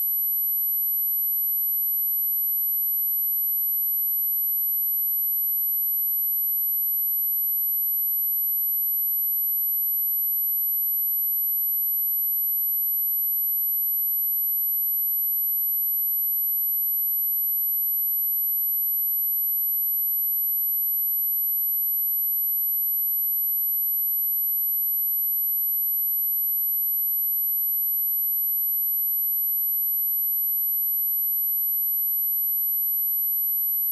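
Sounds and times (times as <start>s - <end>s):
high-pitched sine-wave test tone: 18.0s - 33.9s.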